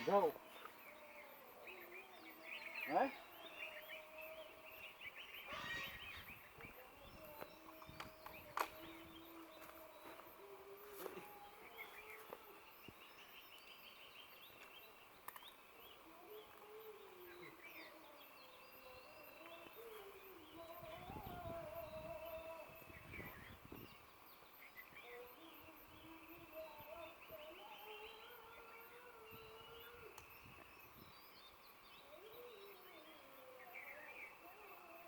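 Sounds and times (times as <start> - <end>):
small birds chirping: 0.0 - 35.0
faint ticks: 6.3 - 15.6, 28.8 - 31.0.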